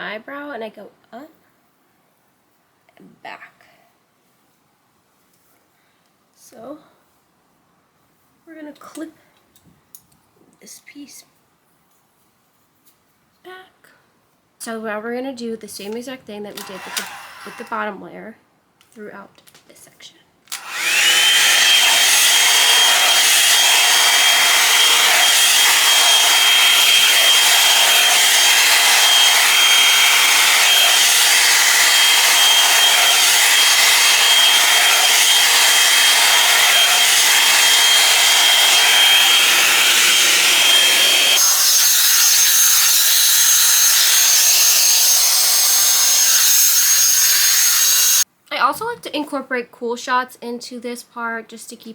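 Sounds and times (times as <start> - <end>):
blow-dryer running: 16.6 - 17.8, 20.5 - 48.2.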